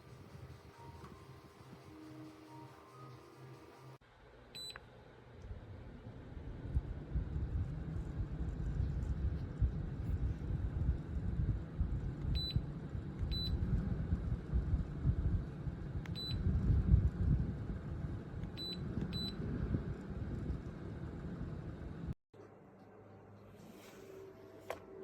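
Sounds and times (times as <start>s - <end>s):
wind buffeting microphone: 13.5s - 21.7s.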